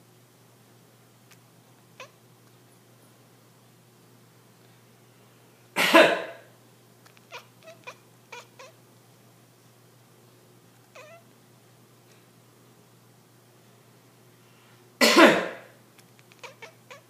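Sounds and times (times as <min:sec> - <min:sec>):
cat meowing: 0:02.0 - 0:02.2, 0:07.2 - 0:08.8, 0:10.9 - 0:11.2, 0:16.3 - 0:17.0
man coughing loudly: 0:05.8 - 0:06.4, 0:15.0 - 0:15.7.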